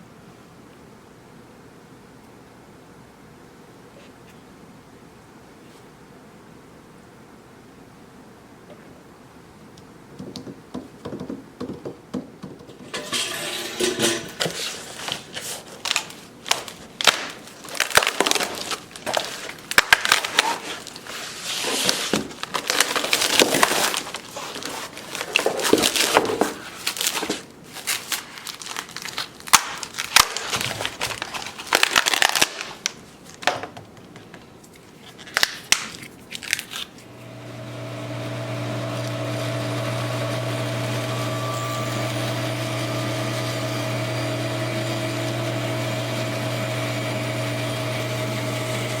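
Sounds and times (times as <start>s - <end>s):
irregular crunching and crackling: 14.5s - 37.1s
power tool motor humming: 37.2s - 49.0s.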